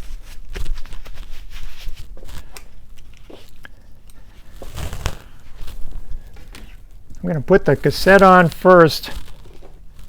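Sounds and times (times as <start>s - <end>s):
hands rustling: 4.2s - 6.2s.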